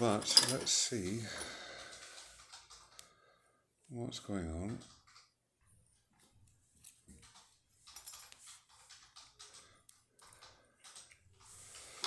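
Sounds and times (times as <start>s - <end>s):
clicks and scrapes of metal lock parts: 0.0s - 3.0s.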